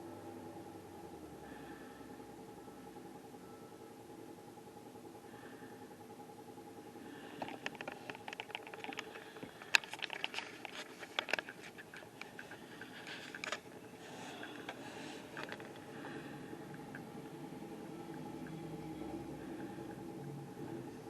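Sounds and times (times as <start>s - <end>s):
faint steady hum: 0.0s - 21.0s
light clicks and taps: 7.4s - 17.1s.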